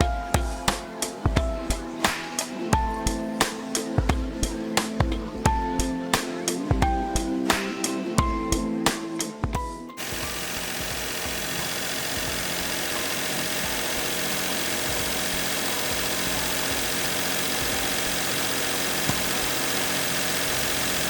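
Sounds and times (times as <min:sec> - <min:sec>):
car engine idling: 0:10.0 - 0:21.0.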